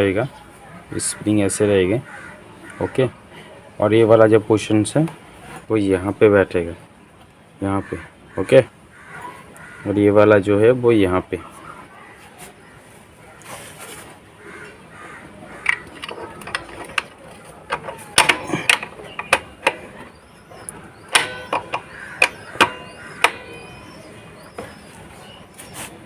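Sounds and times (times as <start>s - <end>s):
metal clicks and clanks: 15.6s - 23.8s.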